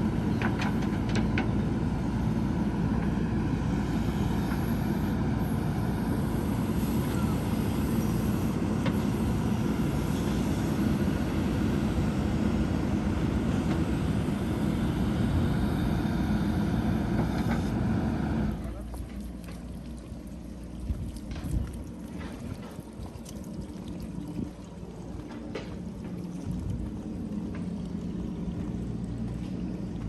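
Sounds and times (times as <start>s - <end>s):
diesel engine running: 0.0s - 19.2s.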